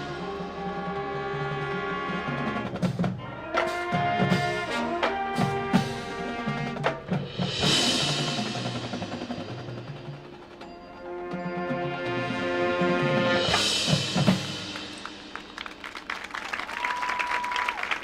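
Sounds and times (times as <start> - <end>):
marching band playing: 0.0 - 18.0
drum and wood-block hits: 13.5 - 15.9.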